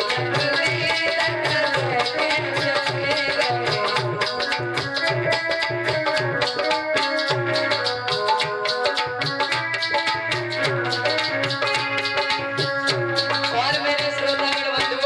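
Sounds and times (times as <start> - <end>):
folk-style melody: 3.7 - 14.7.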